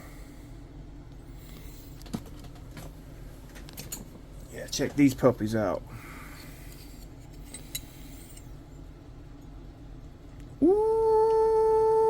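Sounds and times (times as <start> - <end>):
faint clinks and handling: 6.4 - 8.9
man singing long ooh: 10.6 - 12.0.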